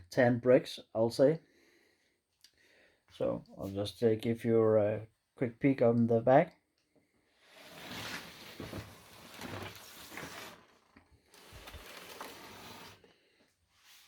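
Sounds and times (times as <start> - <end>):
rustling and scraping handling noise: 7.5 - 13.2.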